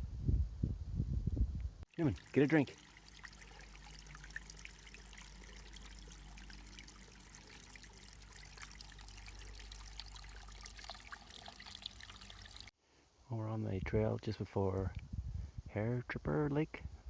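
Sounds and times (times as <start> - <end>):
stream trickling and splashing: 1.9 - 12.8.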